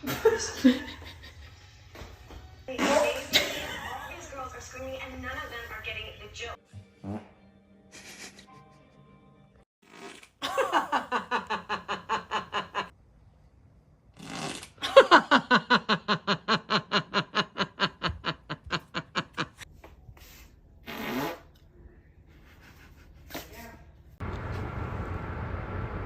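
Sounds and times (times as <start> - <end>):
person laughing hard: 7.9 - 8.8, 10.4 - 12.9, 14.8 - 19.6.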